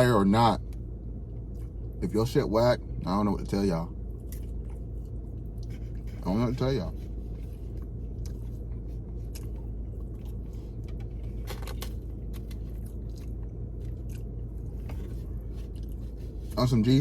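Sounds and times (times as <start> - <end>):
steady low hum: 0.0 - 17.0
person chewing food: 4.1 - 6.2, 7.1 - 16.5.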